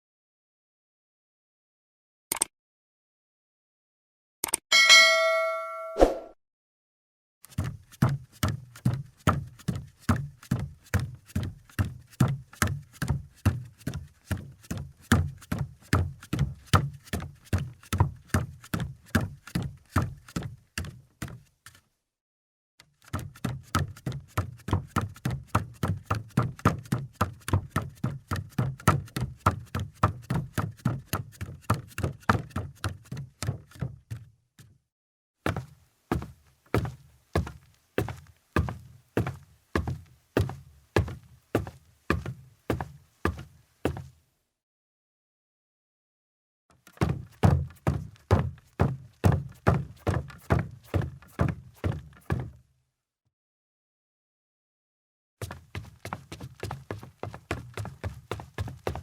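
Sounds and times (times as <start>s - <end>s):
footsteps on wooden floor: 35.5s - 44.1s, 46.9s - 52.6s, 55.4s - 59.0s.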